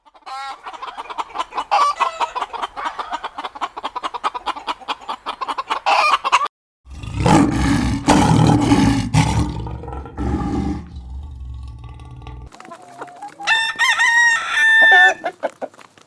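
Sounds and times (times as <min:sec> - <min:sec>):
chickens clucking: 0:00.0 - 0:06.5
heavy low rumble: 0:06.9 - 0:12.5.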